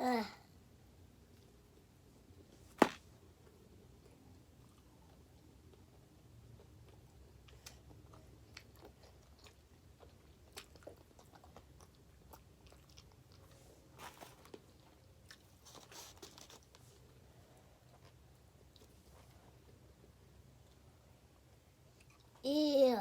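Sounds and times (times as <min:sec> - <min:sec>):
chewing and biting pizza: 0:06.6 - 0:17.1.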